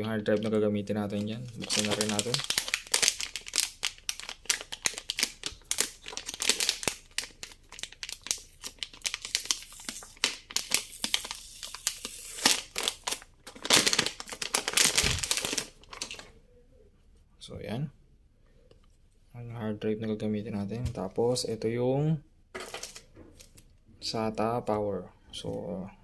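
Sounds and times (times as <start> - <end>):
plastic packaging crinkling: 0.2 - 16.3
plastic tearing: 1.1 - 16.3.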